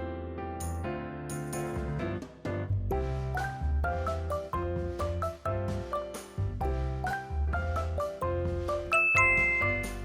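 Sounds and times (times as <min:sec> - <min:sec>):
bouncy music with bass beat: 0:01.8 - 0:10.0
bright two-note chime: 0:08.9 - 0:10.0.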